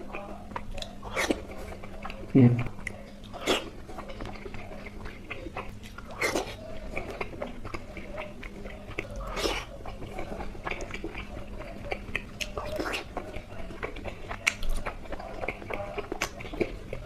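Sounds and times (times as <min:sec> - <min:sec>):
person chewing: 0:00.0 - 0:17.0.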